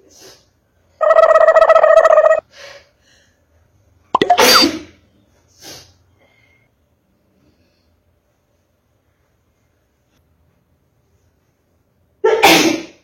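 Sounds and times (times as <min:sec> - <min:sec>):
person sneezing: 0:12.3 - 0:13.0.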